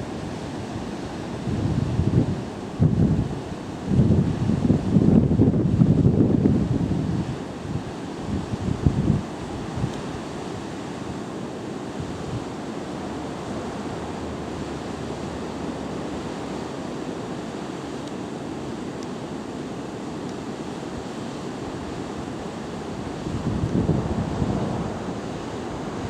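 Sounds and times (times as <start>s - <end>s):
wind on microphone: 0.0s - 11.3s, 20.9s - 26.0s.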